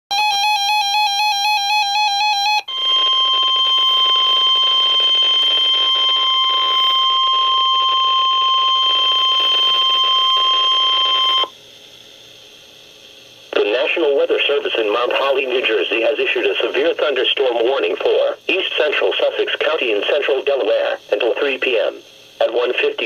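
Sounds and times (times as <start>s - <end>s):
steady warning alarm tone: 0.1s - 11.5s
warbling electronic data burst: 2.7s - 11.5s.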